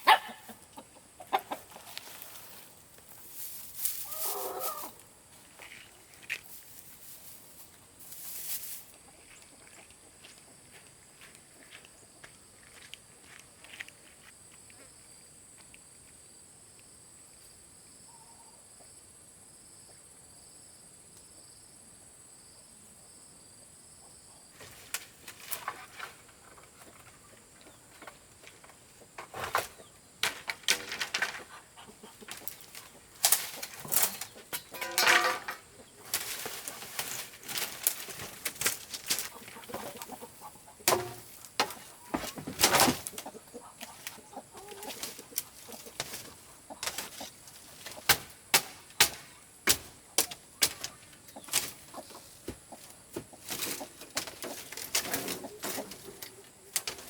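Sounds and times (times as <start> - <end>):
chickens clucking: 0.0 - 5.5, 24.0 - 57.0
chickens flapping wings: 36.0 - 40.3, 41.7 - 48.3.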